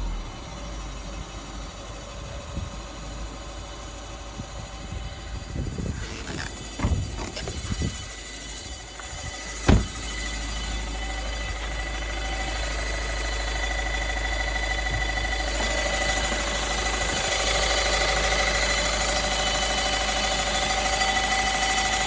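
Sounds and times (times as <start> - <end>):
diesel engine idling: 0.0 - 22.0
engine knocks: 5.4 - 13.3.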